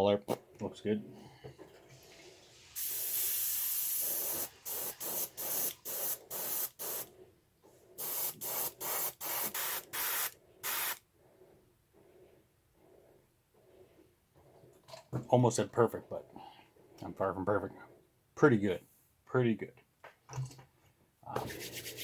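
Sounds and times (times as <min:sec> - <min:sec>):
airbrush spraying hiss: 0:02.6 - 0:07.1, 0:08.0 - 0:11.0.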